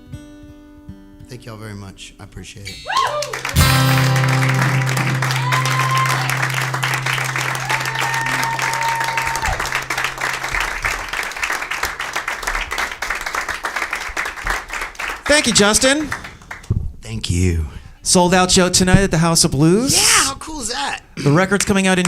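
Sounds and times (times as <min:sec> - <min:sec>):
acoustic guitar chord ringing: 0:02.7 - 0:12.4
audience applauding: 0:03.0 - 0:16.7.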